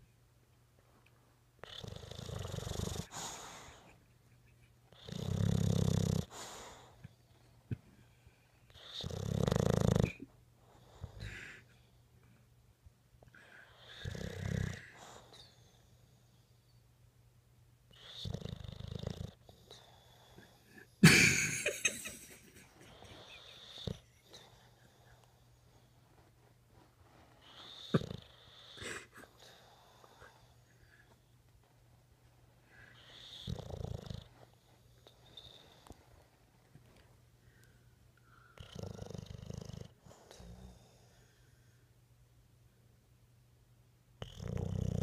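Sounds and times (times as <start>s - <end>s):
dog snoring: 1.6s - 3.8s, 4.9s - 7.0s, 8.7s - 10.2s, 13.6s - 16.4s, 17.9s - 20.7s, 22.9s - 25.4s, 27.4s - 30.7s, 32.9s - 36.0s, 38.6s - 41.4s, 44.2s - 45.0s.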